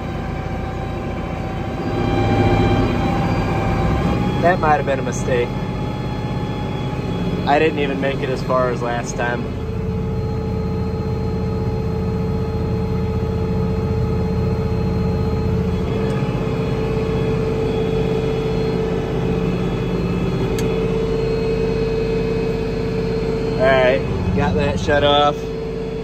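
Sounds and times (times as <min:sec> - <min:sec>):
steady machine whine: 0:00.0 - 0:26.0
tractor diesel engine running: 0:00.0 - 0:26.0.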